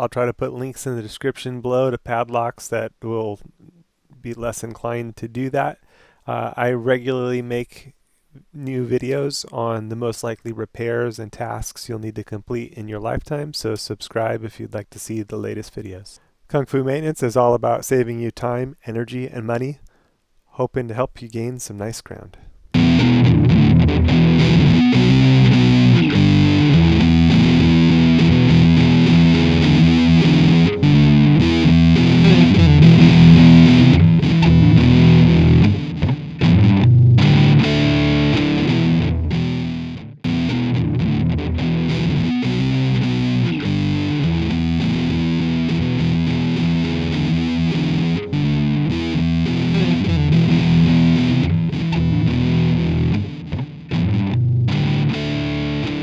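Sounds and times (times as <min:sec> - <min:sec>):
distorted electric guitar music: 0:22.7 - 0:56.0.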